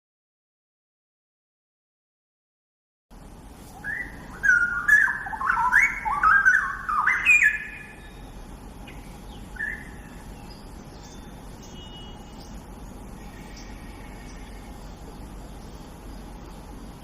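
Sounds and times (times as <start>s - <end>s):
bird singing whistled notes: 3.8s - 16.6s.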